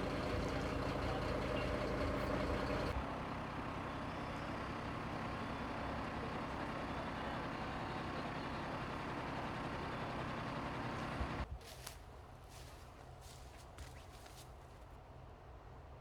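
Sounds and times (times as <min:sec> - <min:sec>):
truck diesel engine running: 0:00.0 - 0:11.5.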